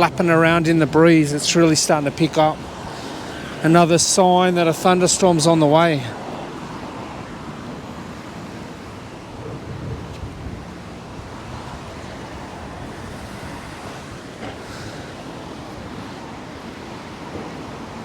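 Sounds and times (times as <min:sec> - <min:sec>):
gusty wind on microphone: 0:06.2 - 0:18.0.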